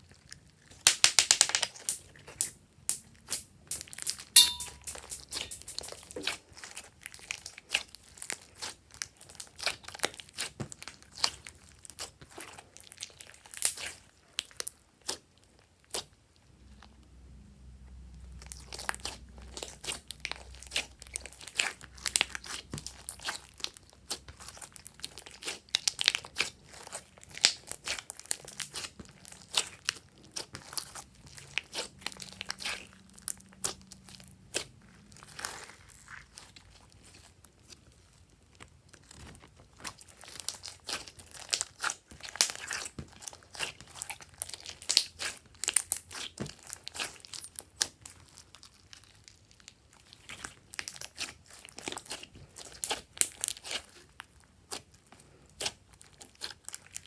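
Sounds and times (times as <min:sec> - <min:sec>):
slime squished by hand: 0:18.4 - 0:57.0.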